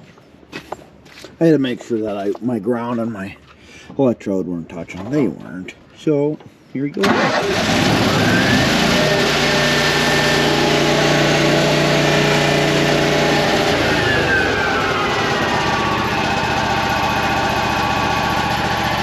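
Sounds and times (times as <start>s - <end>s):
gasoline engine running: 7.0s - 19.0s.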